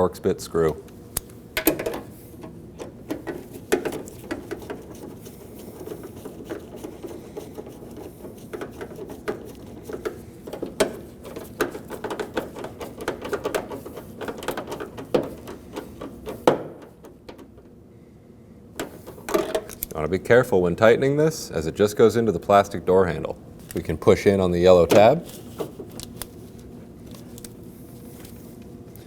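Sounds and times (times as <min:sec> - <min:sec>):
hand tool tightening screw: 0:03.1 - 0:16.4.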